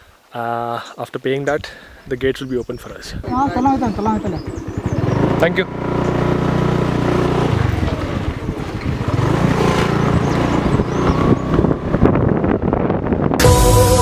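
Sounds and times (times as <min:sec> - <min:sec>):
vehicle engine at low revs: 0:03.2 - 0:13.4
microphone handling rattle: 0:03.3 - 0:06.3.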